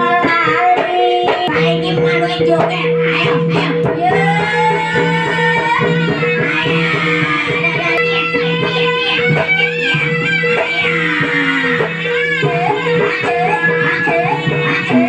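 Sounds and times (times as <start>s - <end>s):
hand drum strokes: 0.0s - 15.0s
steady held tones: 0.0s - 15.0s
sliding melody line: 6.5s - 15.0s.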